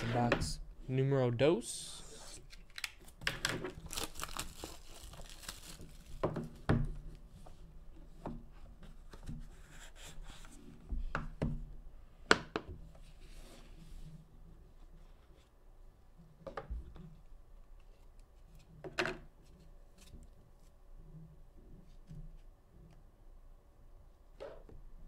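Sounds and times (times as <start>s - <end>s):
packaging tearing and crinkling: 2.5s - 6.1s.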